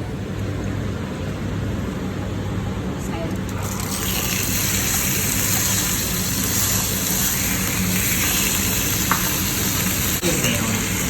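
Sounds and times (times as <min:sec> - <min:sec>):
food sizzling on grill plate: 0:03.6 - 0:11.0.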